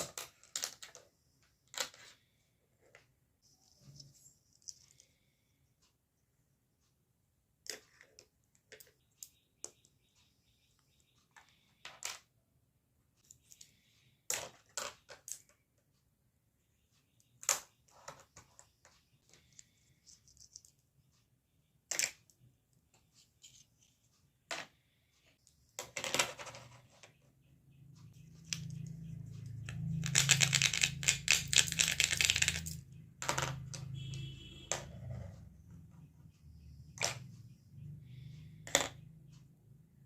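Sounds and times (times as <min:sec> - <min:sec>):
plastic pieces clicking: 0:00.0 - 0:02.2, 0:29.6 - 0:33.9
plastic pieces rattling: 0:29.7 - 0:33.7.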